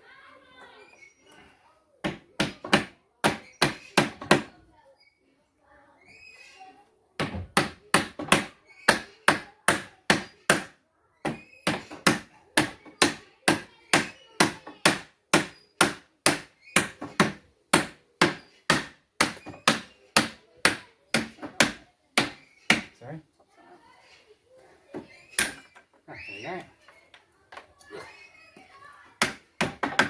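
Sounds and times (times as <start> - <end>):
hammer striking wood: 2.0 - 4.6, 7.2 - 23.0, 24.9 - 25.6, 29.2 - 30.0.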